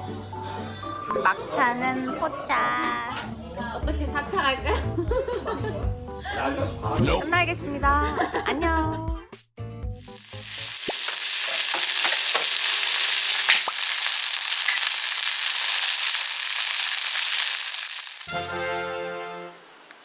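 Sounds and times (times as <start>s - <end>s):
batter sizzling in a frying pan: 10.0s - 18.6s.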